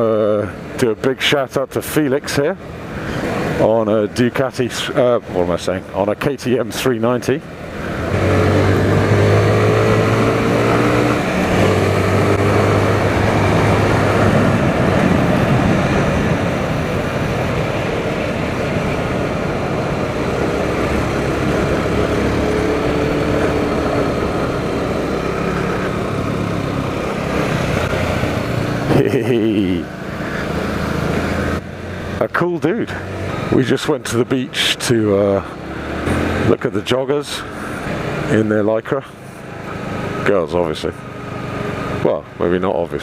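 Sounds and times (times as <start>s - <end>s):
rushing wind and road noise: 0.0s - 43.0s
motorcycle engine running: 7.4s - 32.2s.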